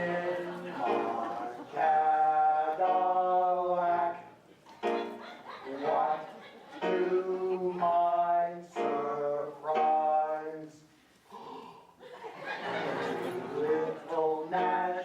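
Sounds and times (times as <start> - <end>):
chuckling and laughter: 0.0 - 1.8, 4.5 - 7.4, 12.0 - 14.3
man singing long notes: 0.0 - 4.3, 5.7 - 10.8.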